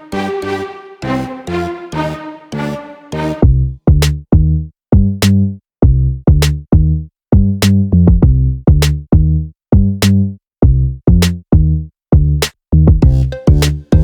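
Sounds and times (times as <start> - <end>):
electronic beat music: 0.0 - 3.6, 13.0 - 14.0.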